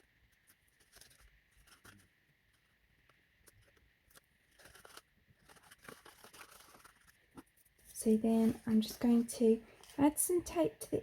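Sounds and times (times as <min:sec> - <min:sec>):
cardstock and tape rustling: 0:00.0 - 0:10.6.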